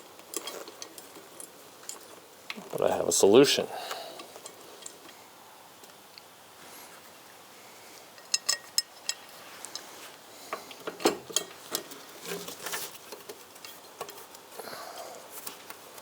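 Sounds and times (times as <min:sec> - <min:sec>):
metal bolts clinking: 0:08.2 - 0:09.3, 0:10.9 - 0:11.9.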